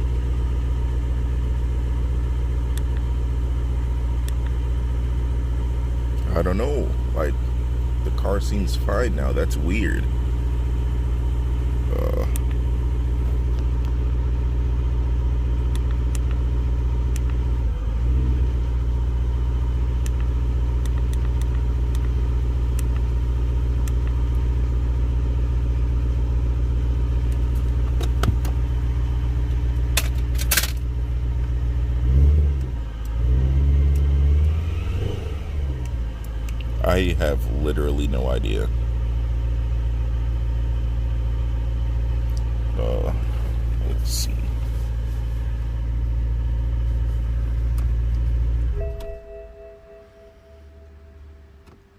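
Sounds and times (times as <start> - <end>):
car engine idling and revving: 0.0 - 51.9.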